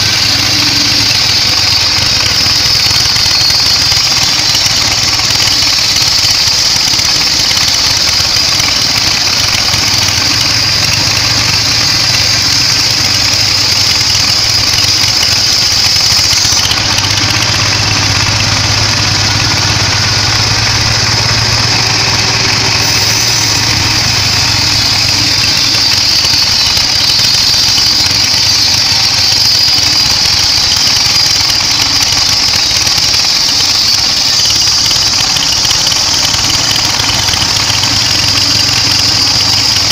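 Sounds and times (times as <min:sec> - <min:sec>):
band saw droning and whining: 0:00.0 - 0:39.9.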